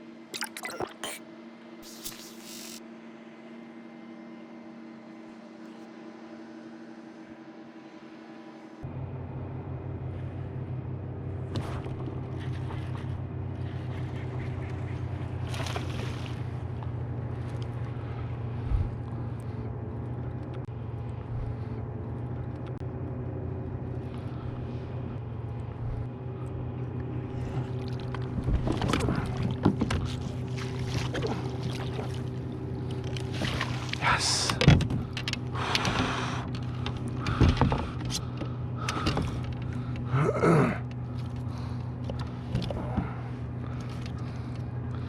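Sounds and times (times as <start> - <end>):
small motor humming: 1.8 - 2.9
knocks and splashy handling: 27.5 - 35.4.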